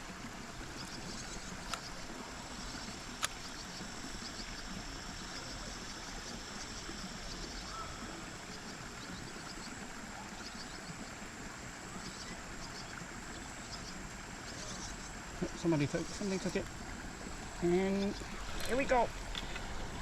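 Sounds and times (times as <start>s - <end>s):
outdoor background hiss: 0.0s - 20.0s
faint bird chirps: 5.4s - 11.1s, 11.9s - 16.6s.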